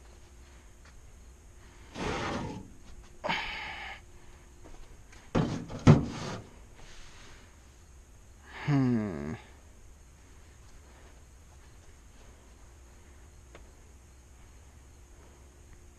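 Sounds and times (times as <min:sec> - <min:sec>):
scraping sliding noises: 0:01.8 - 0:03.0, 0:05.4 - 0:07.4.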